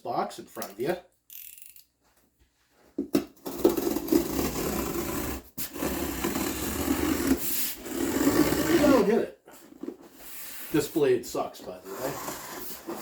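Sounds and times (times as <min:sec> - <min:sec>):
knife sawing through cardboard: 0:03.5 - 0:09.2, 0:11.8 - 0:13.0.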